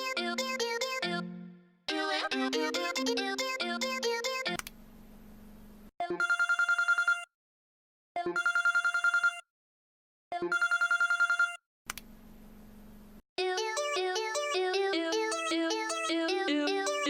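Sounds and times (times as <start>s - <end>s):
electronic phone ringtone: 6.0s - 7.3s, 8.3s - 9.5s, 10.4s - 11.6s, 13.5s - 17.0s.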